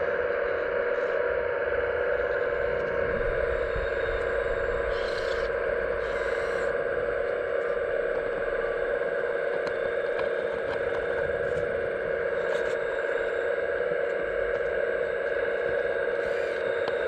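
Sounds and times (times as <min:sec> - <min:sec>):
hydraulic pump whining: 0:01.8 - 0:13.4.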